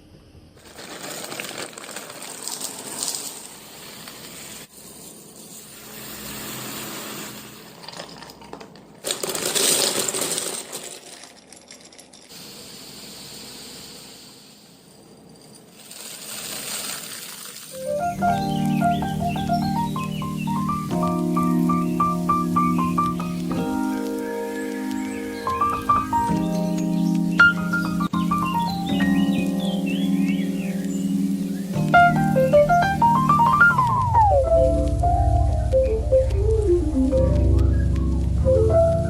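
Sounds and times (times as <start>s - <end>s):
containers clinking and rattling: 0.6s - 4.2s, 7.7s - 12.4s, 15.6s - 17.8s
packages rustling: 0.6s - 4.6s, 7.7s - 12.3s, 15.8s - 35.6s.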